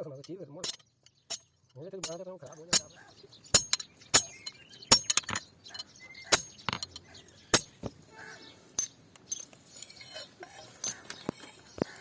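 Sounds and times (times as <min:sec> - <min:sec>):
hammer striking metal: 0:00.6 - 0:05.4, 0:06.3 - 0:06.9, 0:07.6 - 0:08.0.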